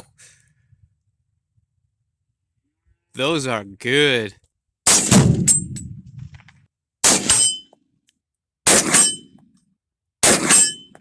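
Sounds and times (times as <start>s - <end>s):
gunshots: 4.9s - 7.4s, 8.7s - 9.1s, 10.2s - 10.7s
steel plate clanging: 5.0s - 6.4s.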